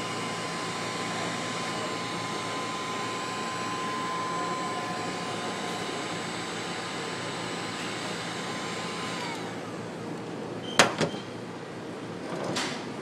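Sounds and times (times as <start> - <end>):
heat gun blowing with whine: 0.0 - 9.8.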